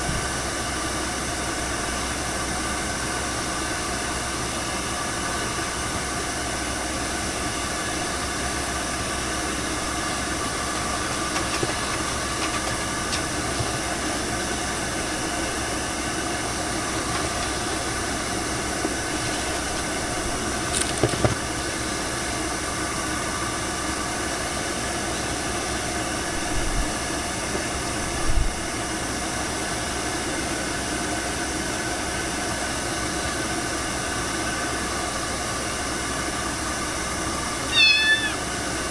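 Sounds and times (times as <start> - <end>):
hair dryer blowing: 7.1 - 23.4.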